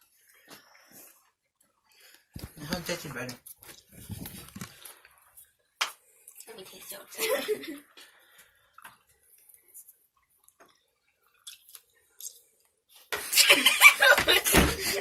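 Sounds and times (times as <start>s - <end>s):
mouth clicks and smacks: 10.4s - 12.5s
children laughing loudly: 13.2s - 15.0s.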